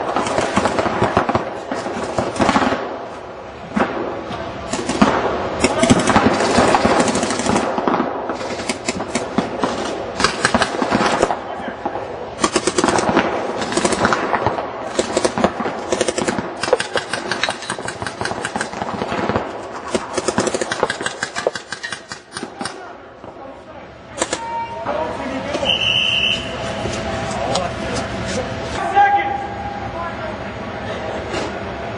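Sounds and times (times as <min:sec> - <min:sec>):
paintball guns firing pops: 0:12.7 - 0:22.8.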